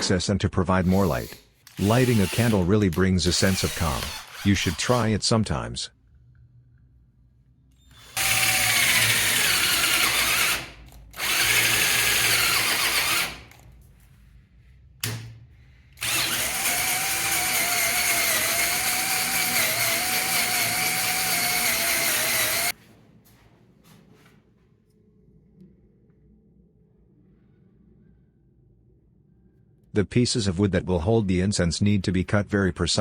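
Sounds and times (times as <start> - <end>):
power drill boring into wood: 0.8 - 5.2, 7.9 - 13.5, 16.0 - 22.7.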